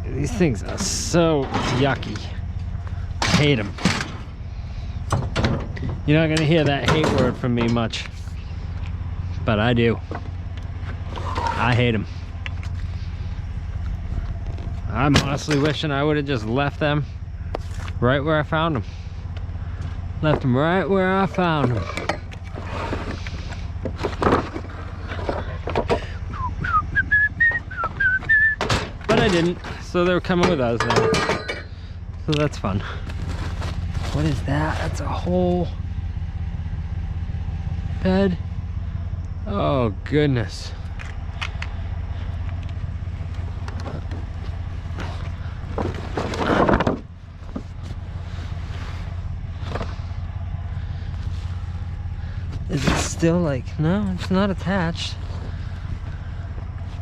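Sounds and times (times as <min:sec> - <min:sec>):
vehicle engine idling: 0:00.0 - 0:57.0
scrap metal clunking: 0:00.5 - 0:08.2, 0:21.4 - 0:26.8, 0:27.4 - 0:32.0, 0:43.5 - 0:53.3
sliding whistled notes: 0:26.2 - 0:28.8.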